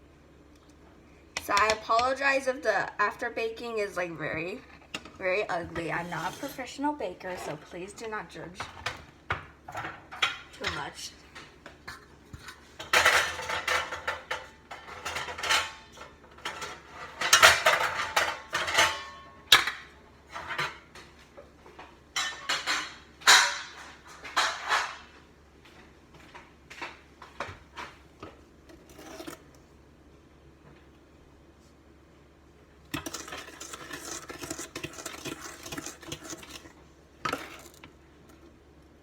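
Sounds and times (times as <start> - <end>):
metal pans and utensils clattering: 4.8 - 7.9, 8.6 - 25.2, 32.9 - 38.0.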